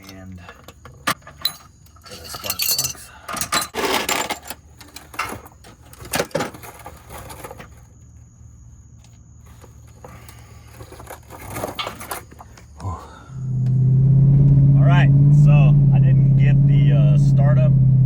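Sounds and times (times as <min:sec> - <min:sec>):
metal tools clinking: 0:00.0 - 0:07.7, 0:10.8 - 0:12.4.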